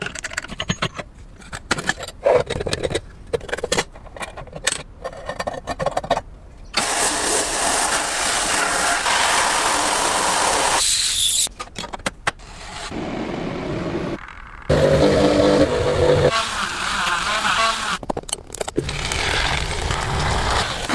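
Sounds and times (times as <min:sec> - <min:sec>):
metal parts clicking and knocking: 0:00.0 - 0:06.3, 0:18.0 - 0:18.8.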